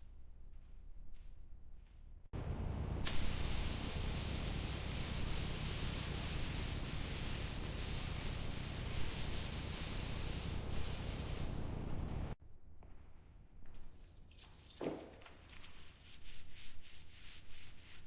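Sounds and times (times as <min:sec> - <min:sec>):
low rumble: 0:02.4 - 0:03.4
pressurised spray hissing: 0:03.0 - 0:12.4.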